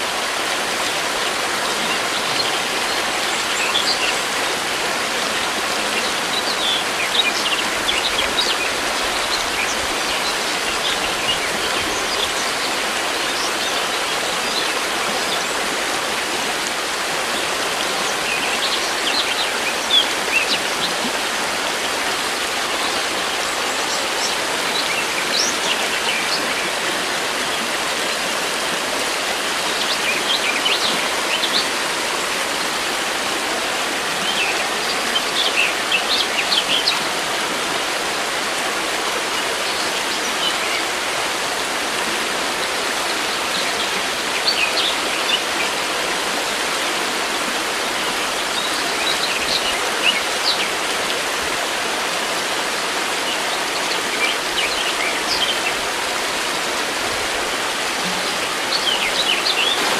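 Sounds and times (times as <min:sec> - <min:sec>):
river rushing: 0:00.0 - 0:59.9
small birds chirping: 0:58.4 - 0:59.9.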